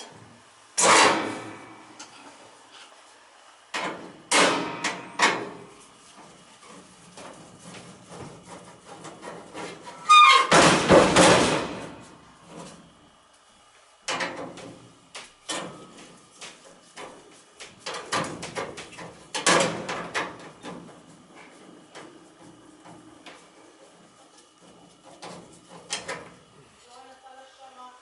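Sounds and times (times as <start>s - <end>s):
metal knocks and bangs: 6.7s - 12.0s, 17.8s - 23.1s
metal squeak: 9.9s - 10.6s.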